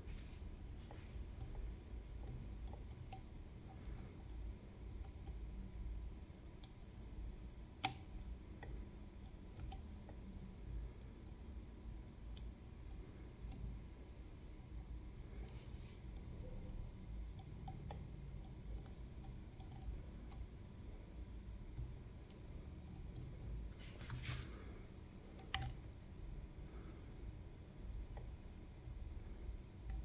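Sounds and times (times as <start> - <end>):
low background hum: 0.0 - 30.0
lock-picking metallic clicks: 7.8 - 10.2, 25.2 - 26.4.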